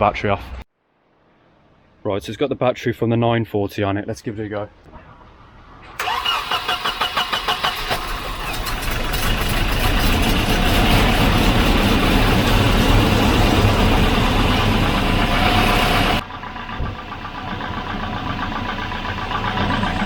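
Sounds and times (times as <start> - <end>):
engine cranking and running: 6.0 - 20.0.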